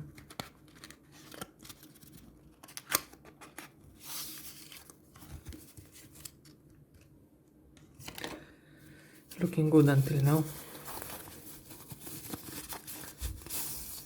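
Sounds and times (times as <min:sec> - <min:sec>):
packaging clicks and crinkles: 0:10.0 - 0:14.0
packaging tearing rustle: 0:10.0 - 0:14.0.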